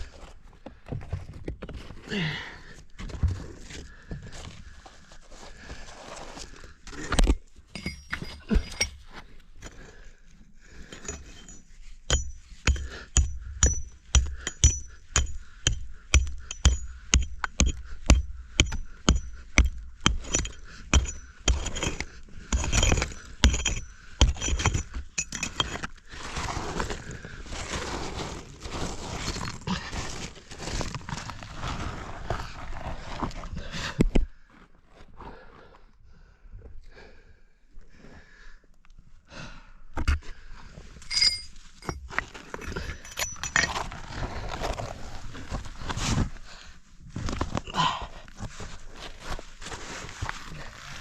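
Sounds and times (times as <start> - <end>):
scraping and rustling of rock: 0.0 - 35.8, 40.0 - 51.0
metal tool striking rock: 7.1 - 9.0, 10.9 - 25.9, 41.0 - 43.8.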